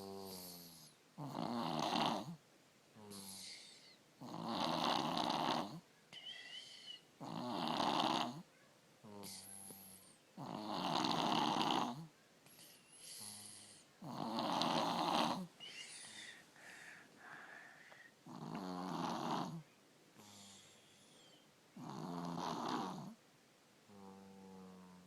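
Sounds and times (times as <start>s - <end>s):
child snoring: 0.0s - 2.4s, 3.0s - 20.9s, 21.8s - 23.2s, 23.9s - 25.0s
child breathing: 6.1s - 7.1s, 15.5s - 18.3s.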